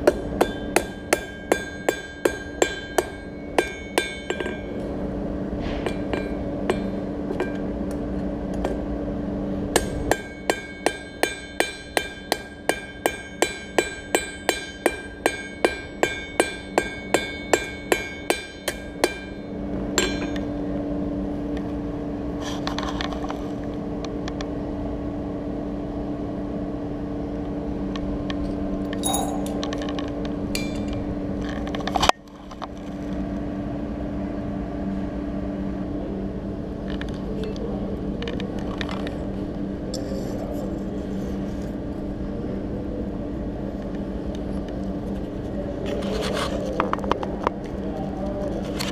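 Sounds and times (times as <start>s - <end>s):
hammer striking steel on anvil: 0.0s - 4.9s, 5.6s - 7.7s, 9.7s - 20.6s, 29.0s - 29.6s, 30.5s - 31.0s
steady low hum: 0.0s - 48.9s
light metal clinks: 29.0s - 29.6s.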